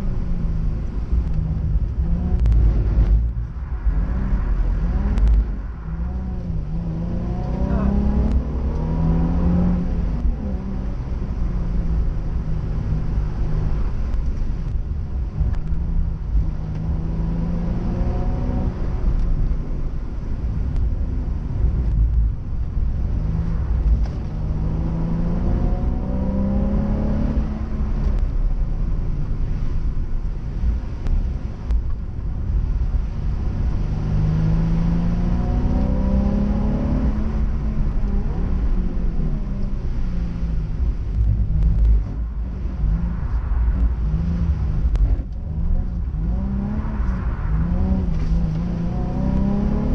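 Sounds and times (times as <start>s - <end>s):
heavy low rumble: 0.0s - 49.9s
car engine revving hard: 6.0s - 11.7s, 24.3s - 28.2s, 33.4s - 41.2s, 41.8s - 49.9s.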